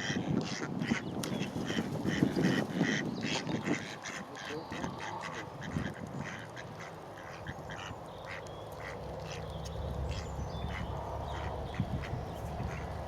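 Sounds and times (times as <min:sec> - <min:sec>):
ducks quacking: 0:00.0 - 0:13.0
low steady rumble: 0:06.6 - 0:13.0.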